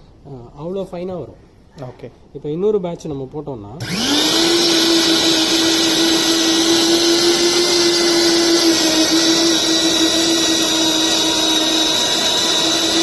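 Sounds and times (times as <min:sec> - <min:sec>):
motor whine: 0:03.8 - 0:13.0.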